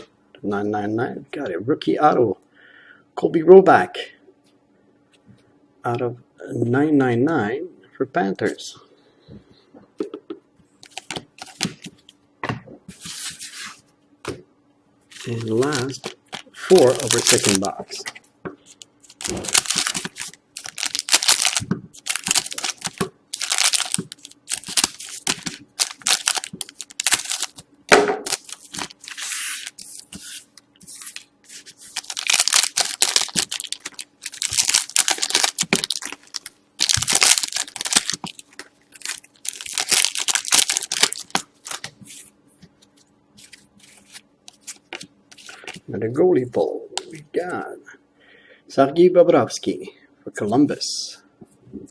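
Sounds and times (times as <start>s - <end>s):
wrappers crinkling: 10.8s - 11.9s, 15.1s - 27.6s, 28.2s - 42.3s, 43.4s - 45.9s
card packs tearing: 15.1s - 18.1s, 19.0s - 27.6s, 28.3s - 42.0s.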